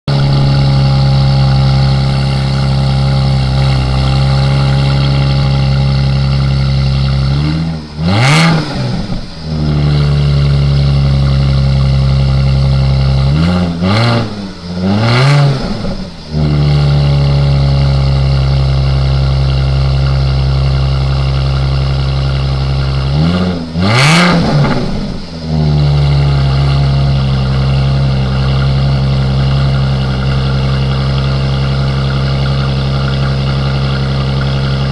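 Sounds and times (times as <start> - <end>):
car exhaust idling and revving: 0.0 - 34.9
exhaust crackles: 0.1 - 34.9.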